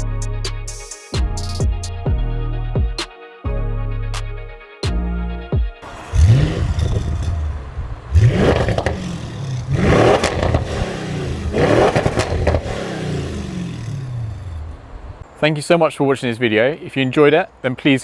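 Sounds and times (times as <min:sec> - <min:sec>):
car engine revving: 0:05.8 - 0:15.2
exhaust crackling: 0:05.8 - 0:15.3.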